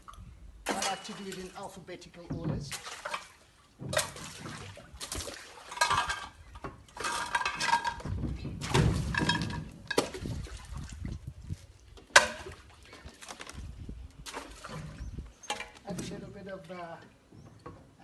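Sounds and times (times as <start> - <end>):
dishes clattering and clinking: 5.7 - 10.0.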